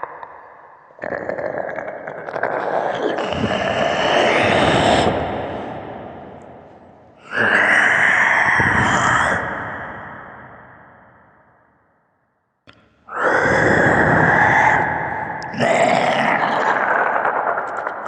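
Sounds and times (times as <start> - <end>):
breathy zombie growls: 1.0 - 6.6, 7.2 - 11.3, 13.1 - 17.6.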